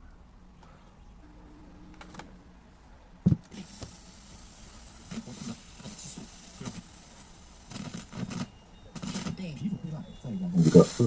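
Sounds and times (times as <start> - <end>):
faint low sounds: 0.0 - 3.5
cassette recorder hiss: 0.0 - 11.0.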